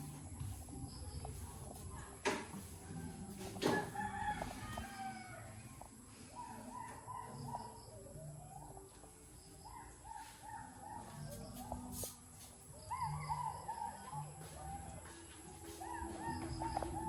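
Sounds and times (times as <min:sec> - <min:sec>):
roosters crowing: 0:03.3 - 0:08.8, 0:12.8 - 0:17.0.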